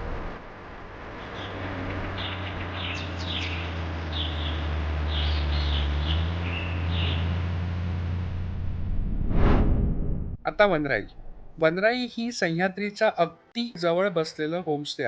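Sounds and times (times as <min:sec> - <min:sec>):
steady low hum: 0:00.0 - 0:12.4
small birds chirping: 0:01.2 - 0:07.6.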